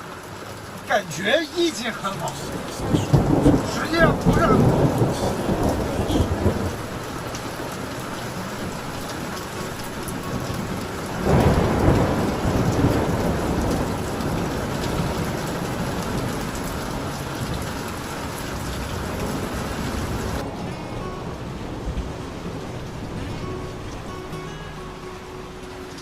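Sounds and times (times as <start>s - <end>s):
heavy rain pouring: 0.0s - 26.0s
thunder rumbling: 0.8s - 20.5s.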